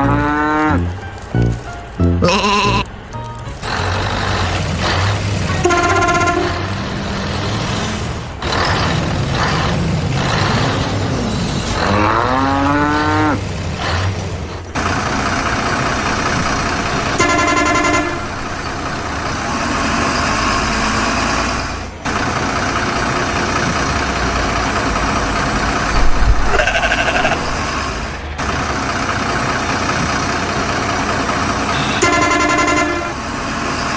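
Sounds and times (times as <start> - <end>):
horns honking: 0.0 - 4.9, 5.5 - 7.2, 16.6 - 19.3, 30.6 - 33.6
truck engines and road traffic: 0.0 - 33.9.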